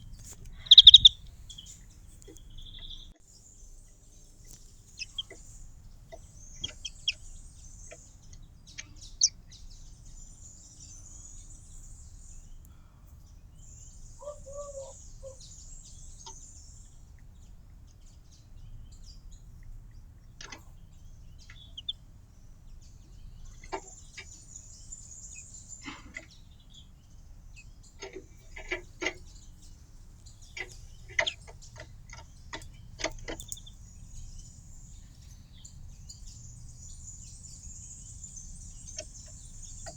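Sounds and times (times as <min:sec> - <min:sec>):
small birds chirping: 0:00.0 - 0:39.9
short low bird call: 0:00.6 - 0:01.2.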